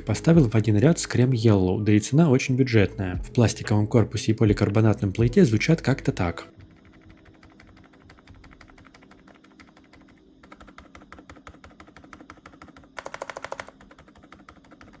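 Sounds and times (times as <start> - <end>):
muted keyboard typing: 4.4 - 15.0.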